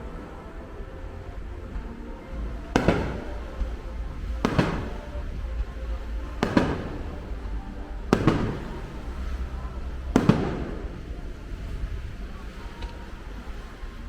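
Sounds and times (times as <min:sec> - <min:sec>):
faint music: 0:00.0 - 0:14.0
low rumble: 0:00.0 - 0:14.0
fireworks bangs: 0:01.7 - 0:12.9.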